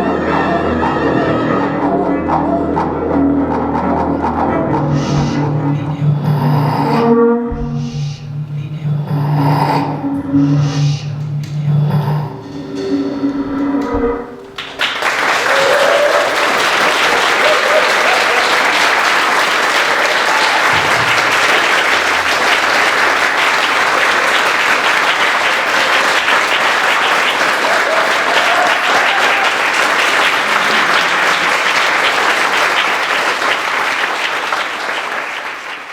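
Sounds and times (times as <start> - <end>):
audience applauding: 14.4 - 35.9.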